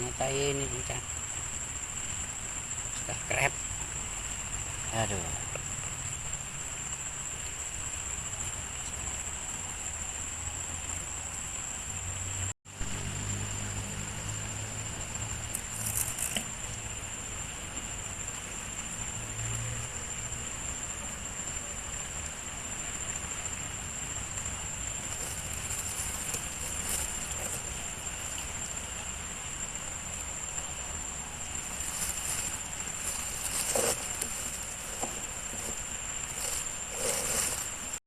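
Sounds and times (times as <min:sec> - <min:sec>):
background hiss: 0:00.0 - 0:38.0
faint crackles: 0:24.9 - 0:29.2, 0:31.4 - 0:38.0.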